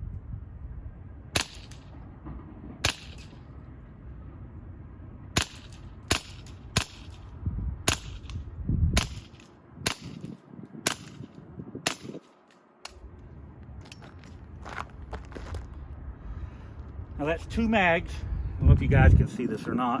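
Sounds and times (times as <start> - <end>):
air pistol shots cracking: 1.4 - 2.0, 2.8 - 3.5, 5.4 - 7.3, 7.9 - 8.4, 9.0 - 13.0.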